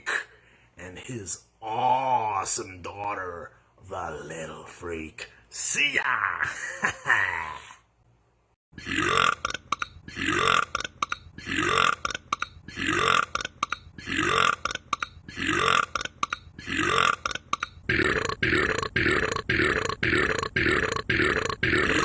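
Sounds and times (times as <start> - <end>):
loud belches: 8.8 - 22.0.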